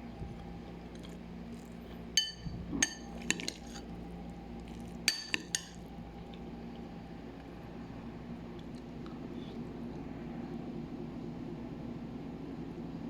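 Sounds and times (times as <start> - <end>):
steady low hum: 0.0 - 13.0
utensil striking a dish: 2.2 - 3.8, 5.0 - 5.8.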